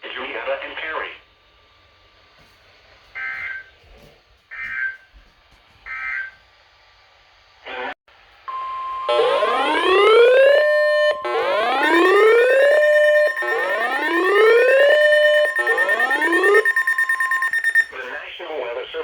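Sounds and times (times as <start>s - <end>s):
higher steady tone: 8.5s - 18.0s
whooping alarm: 8.5s - 18.2s
steady alert tone: 8.6s - 17.9s.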